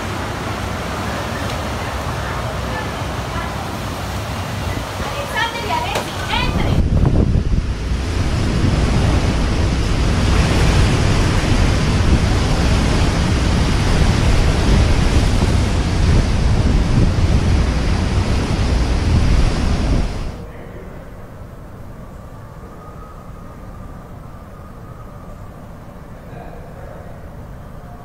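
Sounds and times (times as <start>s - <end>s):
driving rain: 0.0s - 20.5s
strong wind buffeting microphone: 0.0s - 28.0s.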